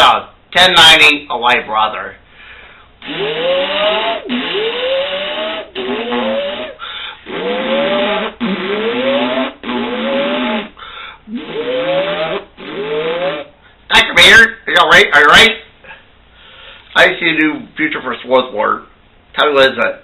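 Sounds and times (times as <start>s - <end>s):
whirring tone rising in pitch: 3.0s - 10.7s.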